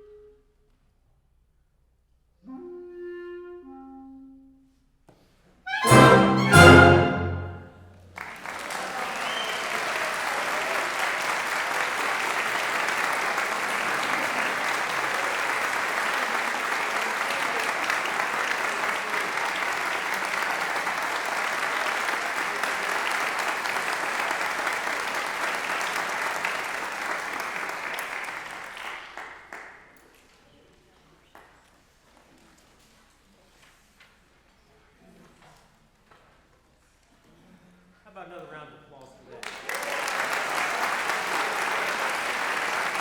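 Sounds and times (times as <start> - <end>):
brass band chord: 5.7 - 7.9
audience applause: 5.7 - 29.8, 39.4 - 43.0.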